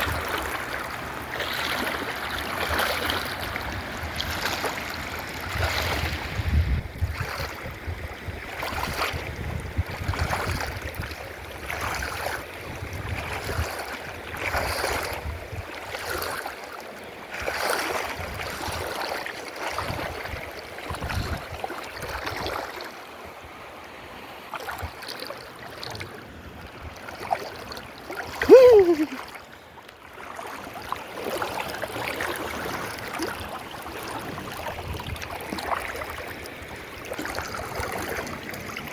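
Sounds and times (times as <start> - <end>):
water rushing: 0.0 - 38.9
short downward gliding tone: 28.4 - 29.2.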